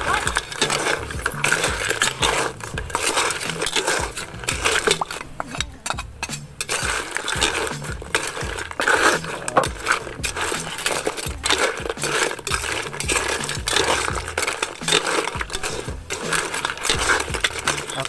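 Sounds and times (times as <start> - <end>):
utensil scraping a pan: 0.0 - 18.0.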